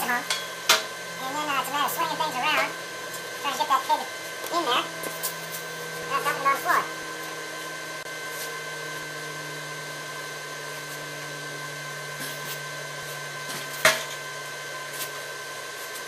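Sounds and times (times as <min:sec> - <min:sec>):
steady machine hum: 0:00.0 - 0:16.0.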